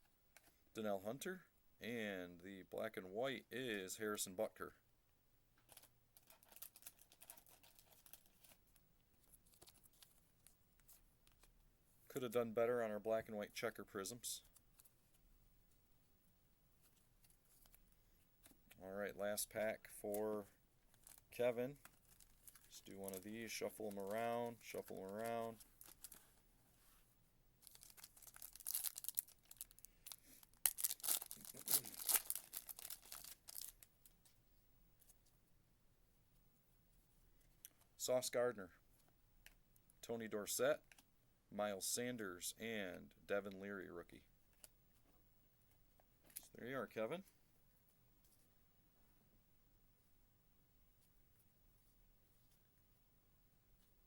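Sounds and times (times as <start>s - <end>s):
trading cards crinkling and clicking: 5.6s - 11.6s, 19.4s - 26.4s, 27.6s - 34.3s.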